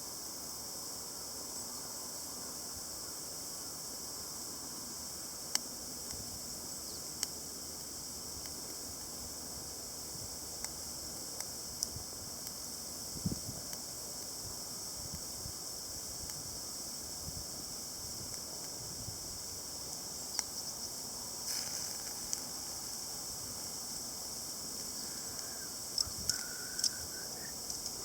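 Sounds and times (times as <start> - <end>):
insects chirping: 0.0 - 28.0
sharp clicks: 24.8 - 28.0.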